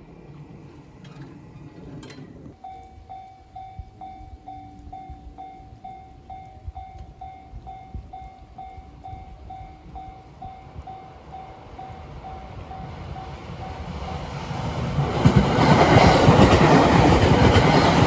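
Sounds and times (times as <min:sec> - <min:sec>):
level crossing warning bell: 0:02.0 - 0:14.3.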